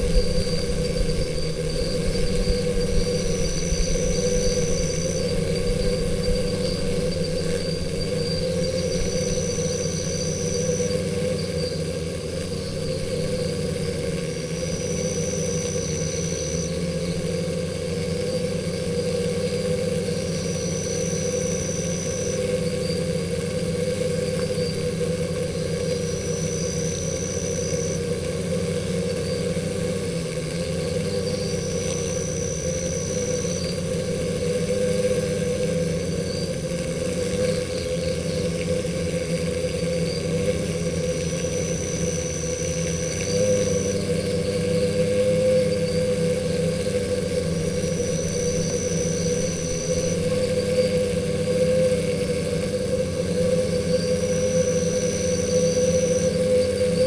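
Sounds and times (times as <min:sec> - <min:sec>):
bees buzzing: 0:00.0 - 0:11.7, 0:23.7 - 0:57.0.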